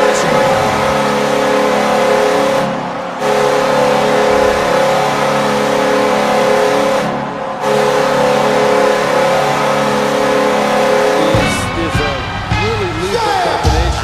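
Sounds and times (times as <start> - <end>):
goal horn blasts: 0.0 - 12.4.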